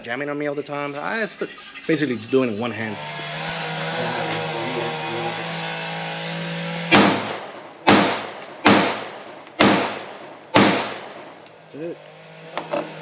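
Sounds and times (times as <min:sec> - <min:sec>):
steady humming drone: 0:02.5 - 0:13.0
pistol shots echoing: 0:06.9 - 0:11.4.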